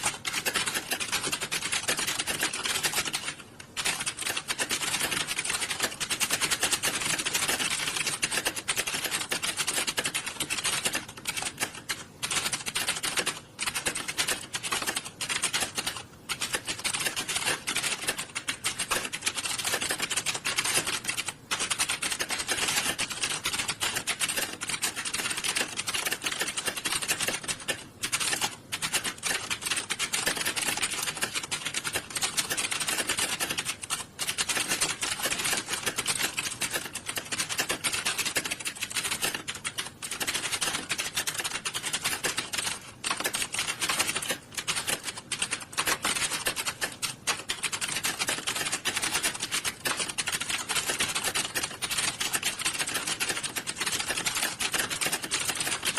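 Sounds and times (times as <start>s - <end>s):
many keyboards clattering: 0.0s - 55.9s.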